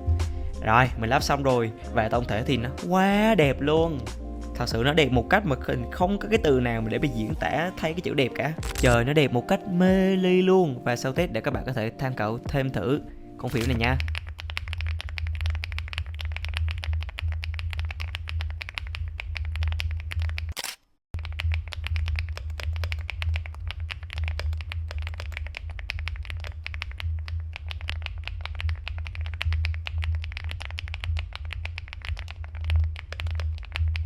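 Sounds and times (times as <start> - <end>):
fast typing on mechanical keyboard: 13.5 - 20.6, 21.2 - 34.0.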